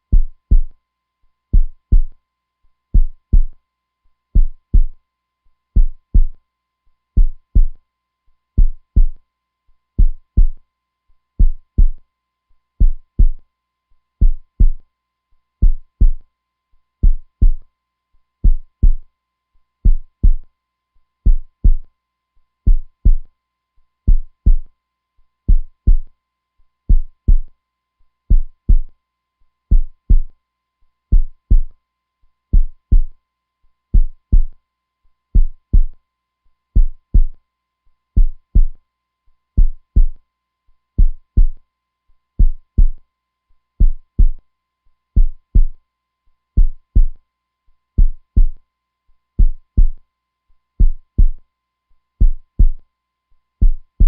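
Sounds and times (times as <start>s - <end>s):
heartbeat thumps: 0.1s - 0.7s, 1.6s - 2.1s, 3.0s - 3.5s, 4.4s - 5.0s, 5.8s - 6.4s, 7.2s - 7.8s, 8.6s - 9.2s, 10.0s - 10.6s, 11.4s - 12.0s, 12.8s - 13.4s, 14.2s - 14.8s, 15.6s - 16.2s, 17.0s - 17.6s, 18.4s - 19.0s, 19.9s - 20.4s, 21.3s - 21.8s, 22.7s - 23.3s, 24.1s - 24.7s, 25.5s - 26.1s, 26.9s - 27.5s, 28.3s - 28.9s, 29.7s - 30.3s, 31.1s - 31.7s, 32.6s - 33.1s, 34.0s - 34.5s, 35.4s - 36.0s, 36.8s - 37.4s, 38.2s - 38.8s, 39.6s - 40.2s, 41.0s - 41.6s, 42.4s - 43.0s, 43.8s - 44.4s, 45.2s - 45.8s, 46.6s - 47.2s, 48.0s - 48.6s, 49.4s - 50.0s, 50.8s - 51.4s, 52.2s - 52.8s, 53.6s - 54.0s.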